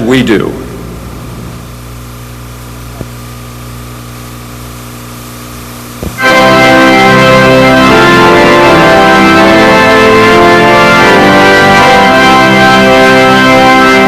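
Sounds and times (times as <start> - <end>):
pipe organ chord: 0.0 - 2.6, 6.2 - 14.0.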